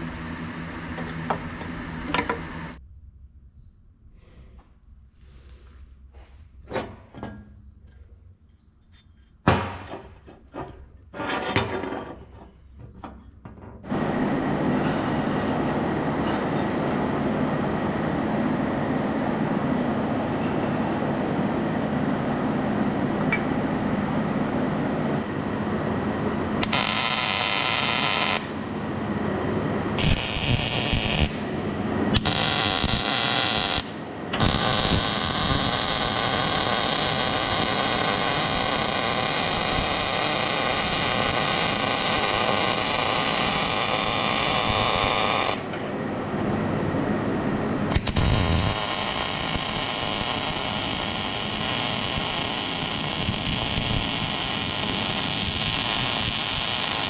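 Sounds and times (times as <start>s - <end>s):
loud steady noise: 0.0s - 2.8s, 13.6s - 57.0s.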